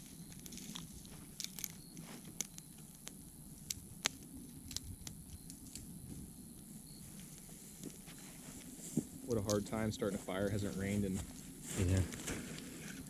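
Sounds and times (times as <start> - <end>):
campfire crackling: 0.0 - 13.0.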